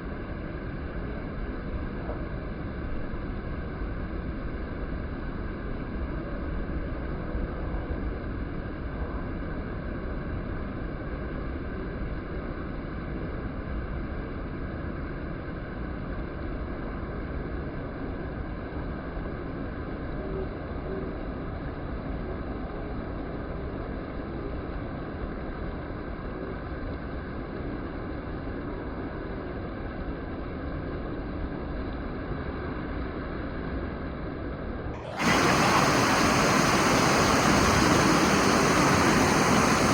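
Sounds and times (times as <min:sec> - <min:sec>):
wind: 0:00.0 - 0:39.9
sea surf rushing: 0:35.0 - 0:39.9.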